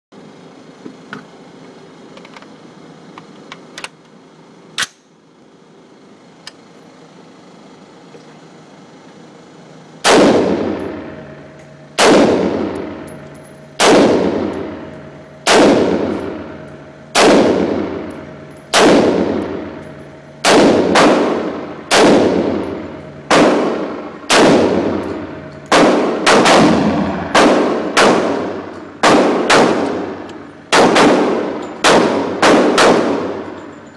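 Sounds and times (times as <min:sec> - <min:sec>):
rifle shots with echo: 0:10.0 - 0:11.3, 0:12.0 - 0:13.2, 0:13.8 - 0:33.6.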